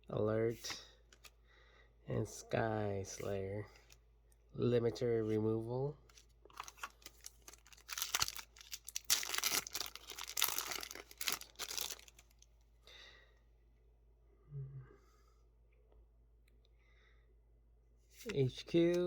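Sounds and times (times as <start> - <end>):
foil pack tearing and crinkling: 6.5 - 12.4.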